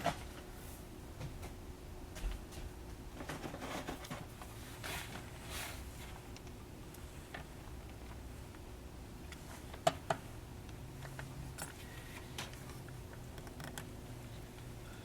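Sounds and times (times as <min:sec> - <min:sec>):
computer parts clicking and tapping: 0:09.3 - 0:14.0.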